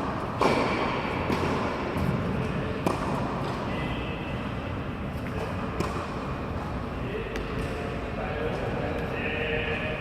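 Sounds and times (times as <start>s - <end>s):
tennis ball hits with echo: 0.0s - 3.8s, 5.1s - 6.4s, 7.2s - 8.7s.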